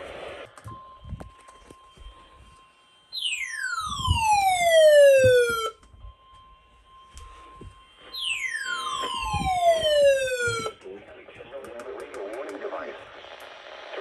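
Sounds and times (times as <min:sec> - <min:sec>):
falling siren-like tone: 0:00.0 - 0:10.8.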